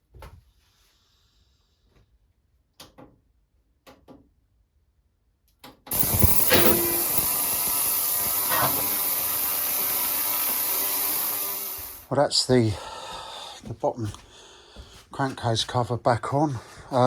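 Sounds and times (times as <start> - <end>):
loud steady hiss: 5.9 - 12.1.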